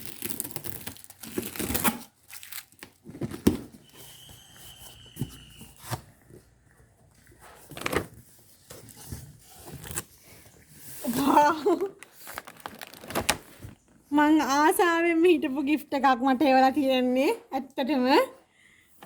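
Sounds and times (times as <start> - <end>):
packaging tearing and crinkling: 0.0 - 3.6, 11.0 - 13.8.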